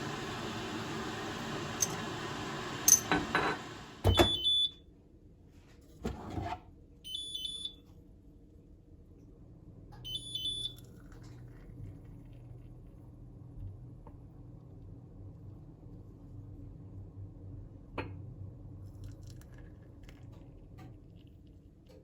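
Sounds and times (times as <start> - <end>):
kitchen appliance running: 0.0 - 4.4.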